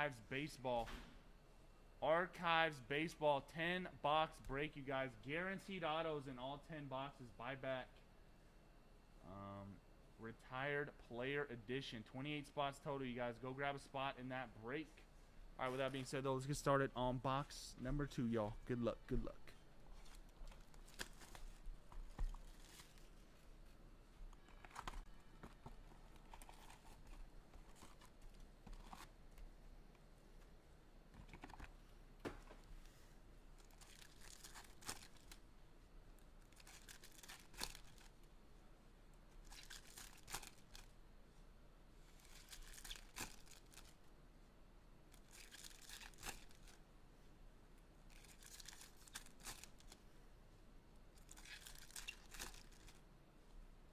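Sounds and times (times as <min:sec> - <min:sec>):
wrapper tearing and crinkling: 0:33.6 - 0:35.4, 0:36.5 - 0:38.1, 0:39.4 - 0:40.9, 0:42.2 - 0:44.0, 0:45.1 - 0:46.8, 0:48.1 - 0:50.0, 0:51.2 - 0:53.0.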